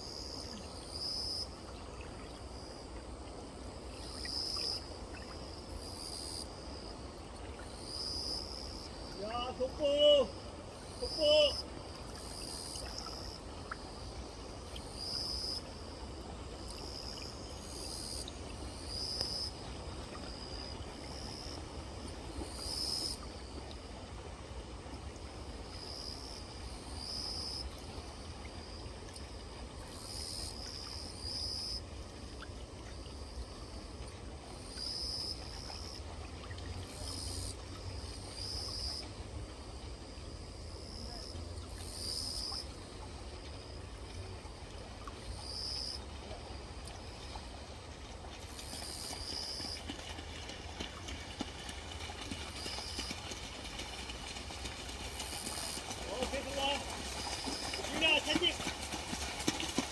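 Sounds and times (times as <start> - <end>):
insects calling: 3.6 - 23.6, 25.6 - 31.9, 36.9 - 39.2, 40.7 - 43.8, 45.2 - 46.0, 48.5 - 50.0, 55.2 - 59.9.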